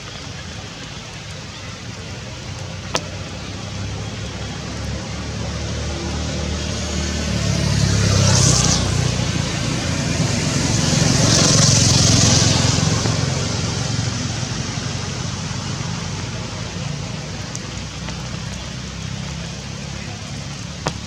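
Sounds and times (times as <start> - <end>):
motor vehicle passing: 2.7 - 21.0.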